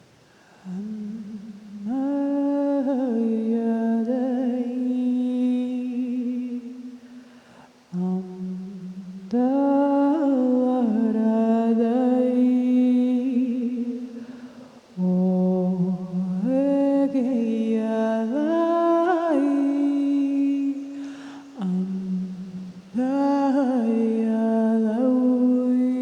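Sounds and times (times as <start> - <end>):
person humming wordless notes: 7.9 - 26.0.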